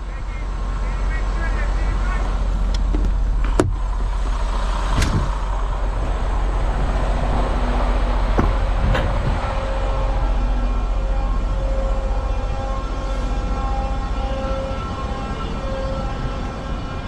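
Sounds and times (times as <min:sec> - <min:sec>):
diesel truck engine idling: 0:00.0 - 0:16.8
sharp knocks: 0:08.3 - 0:09.4.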